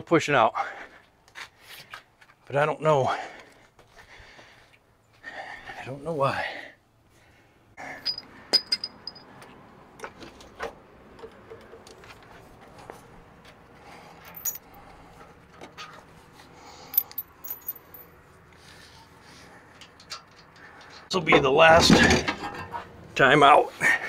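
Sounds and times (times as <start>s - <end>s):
metal tools clinking and rattling: 7.9s - 9.2s, 14.2s - 14.8s, 17.0s - 18.1s.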